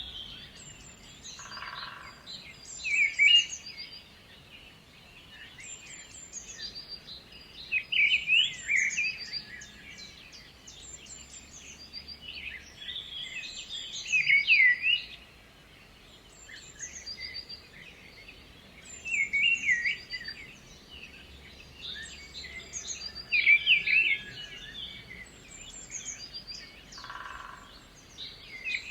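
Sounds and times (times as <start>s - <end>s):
faint background hiss: 0.0s - 28.9s
birds chirping and singing: 16.3s - 28.9s.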